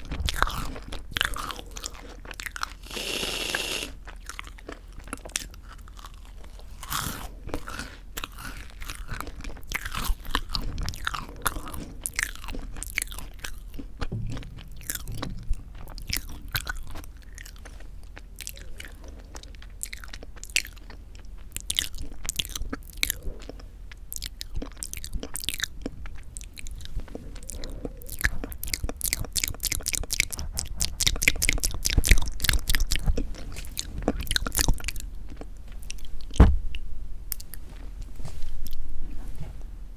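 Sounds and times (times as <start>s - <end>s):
crunching toasted bread: 0.0s - 14.4s.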